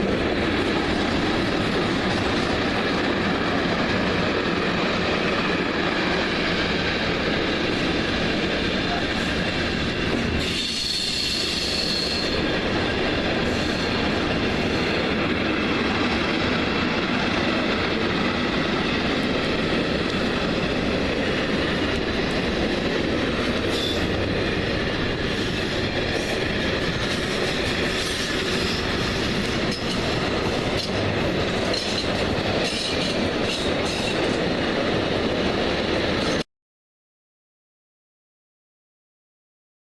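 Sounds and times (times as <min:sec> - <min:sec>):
train wheels rumbling on rails: 0:00.0 - 0:36.4
high wheel squeal: 0:10.4 - 0:12.4.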